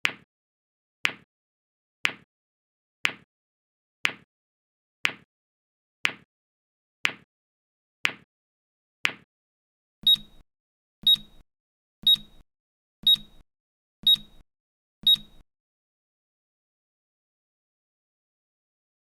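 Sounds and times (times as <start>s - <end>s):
high-pitched electronic beeps: 10.0s - 10.4s, 11.0s - 11.4s, 12.0s - 12.4s, 13.0s - 13.4s, 14.0s - 14.4s, 15.0s - 15.4s.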